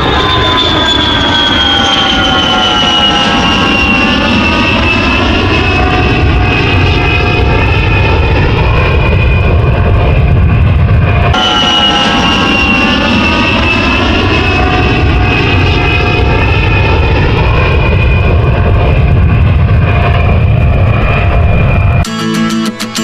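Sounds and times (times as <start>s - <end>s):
airplane engine whine: 0.0s - 23.0s
strummed guitar music: 22.0s - 23.0s.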